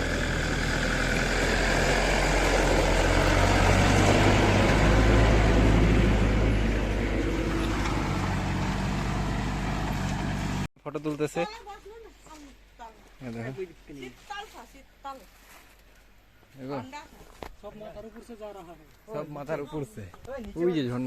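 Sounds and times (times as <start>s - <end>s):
vehicle engine humming: 0.0s - 10.7s.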